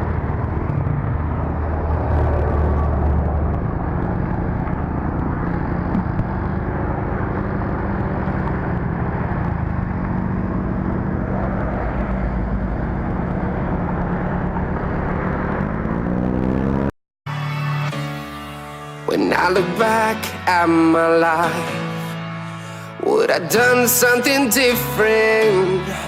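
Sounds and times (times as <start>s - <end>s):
scooter engine running: 0.0s - 16.8s
wind rush: 0.0s - 16.9s.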